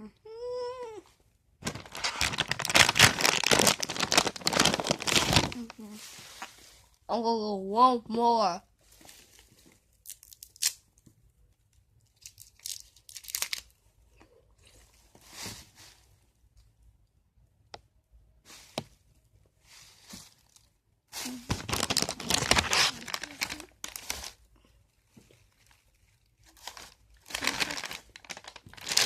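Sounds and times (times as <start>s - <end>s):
paper wrapper tearing and crinkling: 1.6s - 5.8s, 10.0s - 10.8s, 12.2s - 13.7s, 21.2s - 24.4s, 26.4s - 29.0s.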